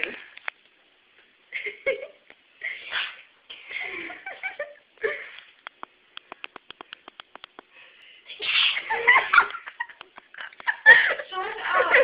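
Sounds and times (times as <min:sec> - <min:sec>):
girl sneezing: 0:02.7 - 0:03.3, 0:08.3 - 0:09.0
quick small clicks: 0:05.6 - 0:07.7.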